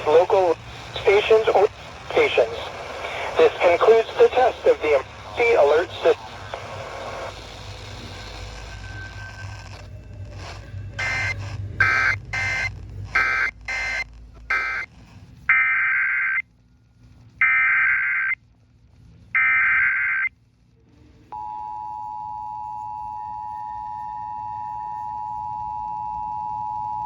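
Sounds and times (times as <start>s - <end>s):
screeching digital data bursts: 11.0s - 14.9s.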